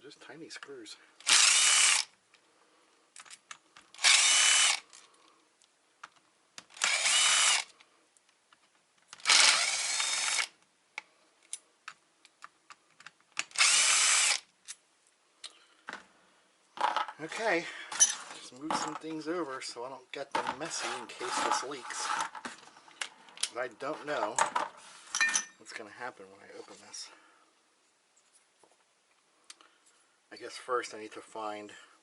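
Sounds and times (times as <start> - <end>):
electric impact driver running: 1.3 - 2.1, 4.0 - 4.8, 6.8 - 7.7, 9.2 - 10.5, 13.6 - 14.4
screws being handled: 17.9 - 19.0, 20.4 - 23.4.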